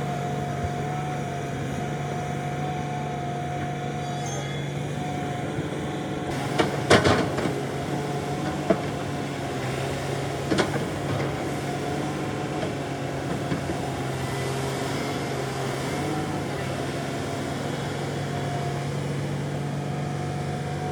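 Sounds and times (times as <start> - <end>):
excavator engine droning: 0.0 - 20.9
metal clanks and knocks: 6.3 - 9.1.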